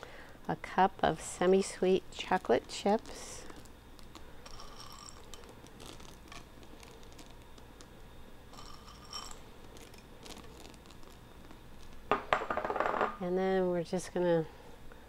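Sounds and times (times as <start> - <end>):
chocolate chips sprinkled into pan: 1.1 - 12.1.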